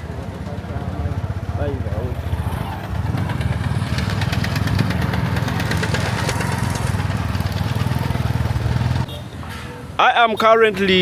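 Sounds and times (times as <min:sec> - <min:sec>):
engine throbbing: 0:00.0 - 0:09.0.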